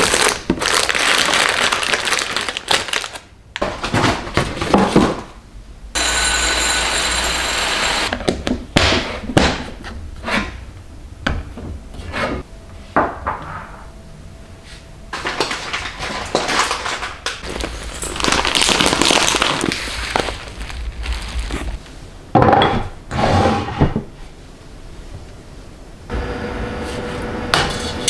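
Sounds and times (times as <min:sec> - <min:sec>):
rustling: 0:15.2 - 0:22.1.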